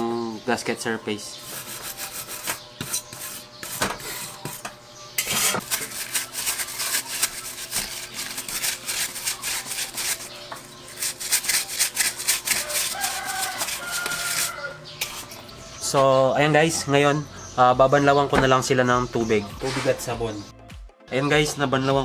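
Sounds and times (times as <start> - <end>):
wire brush scrubbing metal: 1.4 - 15.5.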